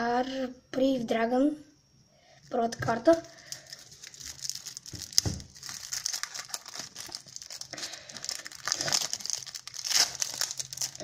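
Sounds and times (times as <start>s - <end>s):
plastic wrapping crinkling: 3.1s - 11.0s.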